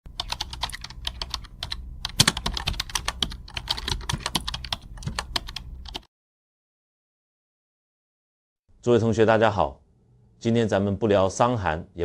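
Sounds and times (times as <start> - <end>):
low steady hum: 0.1 - 6.0
keyboard typing: 0.1 - 6.1.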